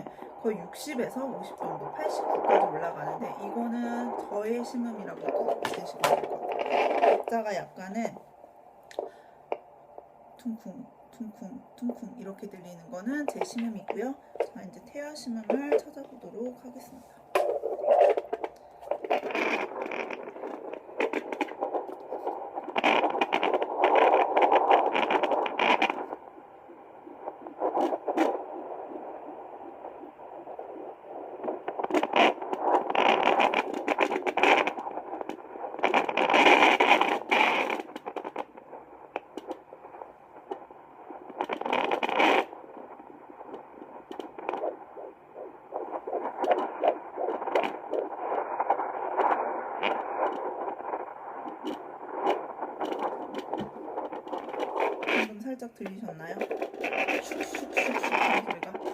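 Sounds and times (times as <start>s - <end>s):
doppler monitor static hissing: 0.0s - 58.9s
heartbeat-like pulsing: 11.0s - 55.2s.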